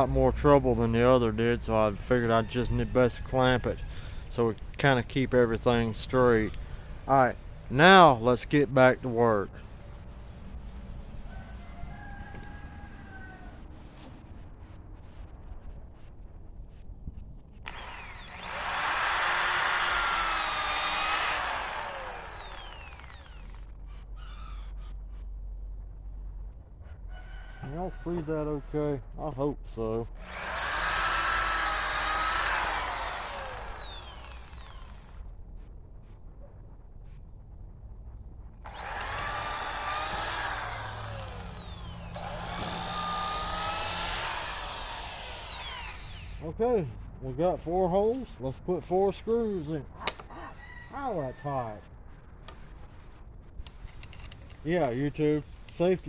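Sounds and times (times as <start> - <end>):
electric drill boring through wood: 17.7 - 24.8, 29.9 - 35.3, 38.6 - 46.5.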